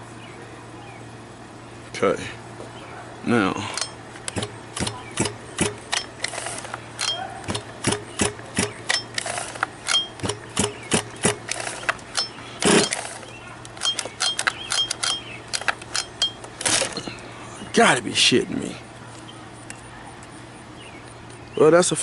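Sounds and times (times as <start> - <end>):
pull starter rasp: 3.8 - 17.0.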